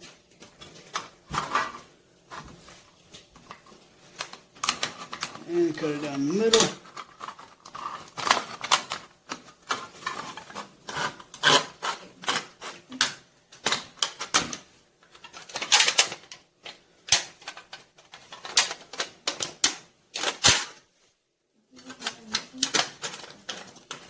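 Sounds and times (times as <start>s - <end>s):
thin metal crinkling: 0.0s - 13.0s, 21.7s - 24.0s.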